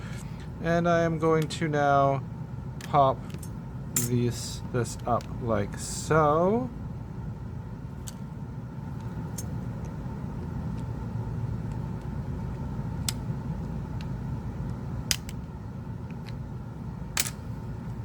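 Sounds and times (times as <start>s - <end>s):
low background rumble: 0.0s - 18.0s.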